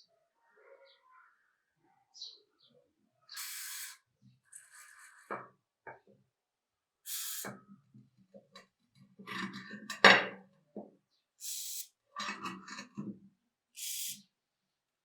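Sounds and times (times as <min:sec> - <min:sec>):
aerosol spray hisses: 0:03.4 - 0:04.0, 0:07.1 - 0:07.5, 0:11.4 - 0:11.9, 0:13.8 - 0:14.2
tool clicks and scraping: 0:09.2 - 0:10.3, 0:12.2 - 0:13.1.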